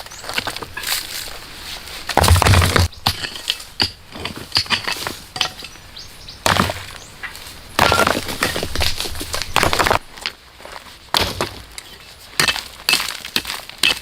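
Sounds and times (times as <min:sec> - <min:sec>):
dry wood cracking and snapping: 0:06.4 - 0:10.1.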